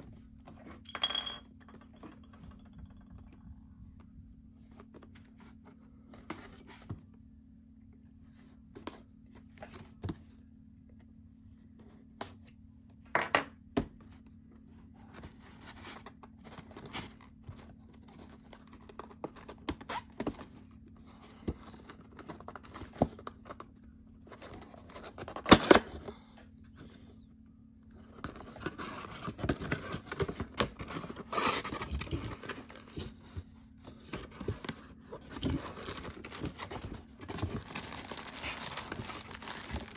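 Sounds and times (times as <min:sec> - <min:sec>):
cardboard box being opened: 0:28.2 - 0:39.9
plastic wrap crinkling: 0:35.4 - 0:39.9.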